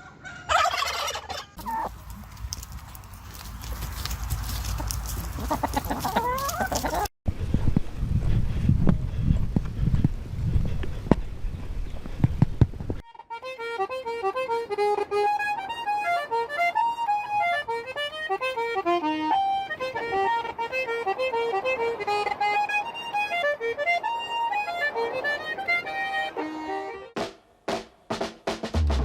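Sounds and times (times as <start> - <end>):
horse hooves clopping: 1.6 - 7.1
lively accordion tune: 13.0 - 27.2.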